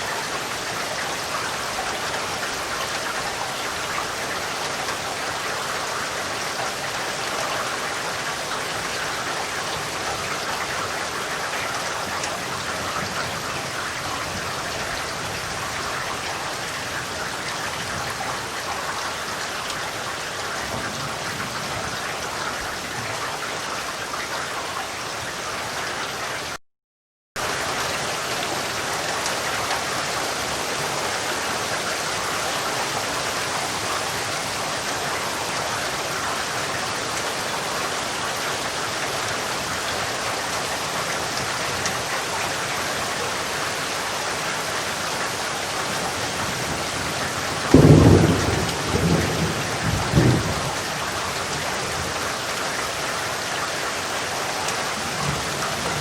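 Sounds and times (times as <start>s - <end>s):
steady rain: 0.0s - 26.6s, 27.4s - 56.0s
thunder rumble: 46.4s - 52.2s.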